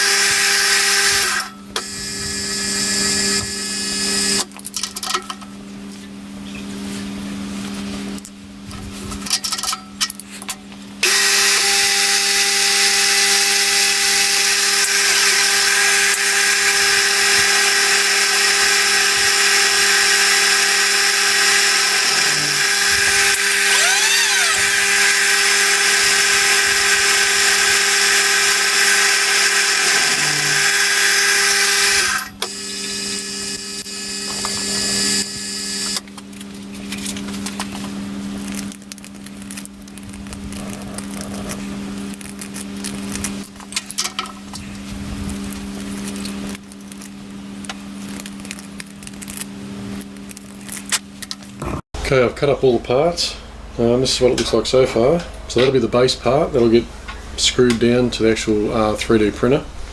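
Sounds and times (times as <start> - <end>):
electric drill drilling steel: 0.0 - 4.5, 11.0 - 36.1.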